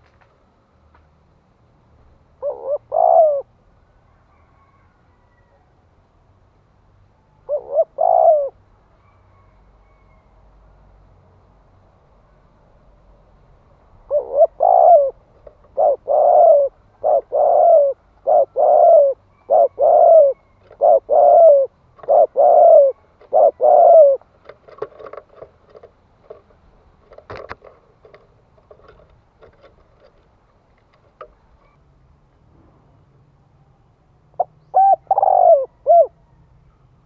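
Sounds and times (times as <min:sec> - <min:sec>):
dove cooing: 0:02.4 - 0:03.6, 0:07.4 - 0:10.0, 0:14.0 - 0:26.4, 0:34.3 - 0:36.4.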